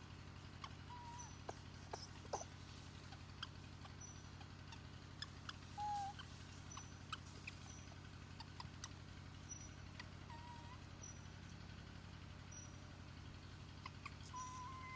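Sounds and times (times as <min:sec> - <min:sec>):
animal squeaks and chirps: 0:00.6 - 0:08.9, 0:09.5 - 0:11.2, 0:13.8 - 0:14.9.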